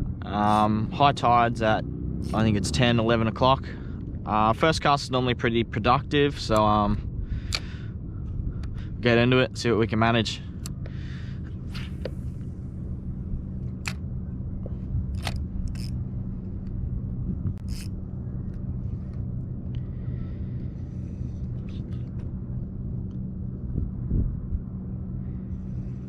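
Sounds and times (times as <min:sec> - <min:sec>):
low hum: 0:00.0 - 0:26.0
fishing reel clicking: 0:15.1 - 0:16.0, 0:17.6 - 0:18.0.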